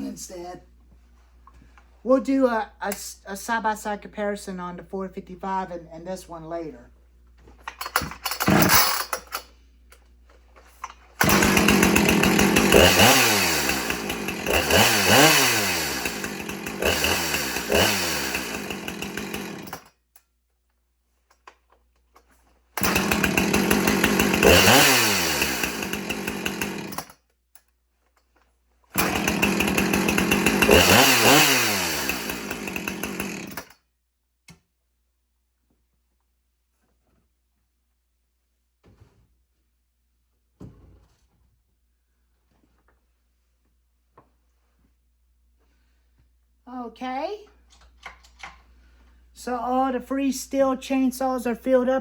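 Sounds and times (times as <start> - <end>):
chainsaw engine revving: 8.0 - 9.4, 11.2 - 19.9, 22.8 - 27.1, 29.0 - 33.7.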